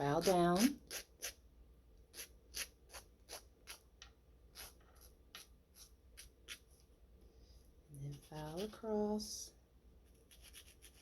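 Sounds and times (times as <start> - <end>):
nail file scraping fingernail: 0.2 - 1.4, 2.1 - 3.8, 4.5 - 6.7, 10.1 - 11.0.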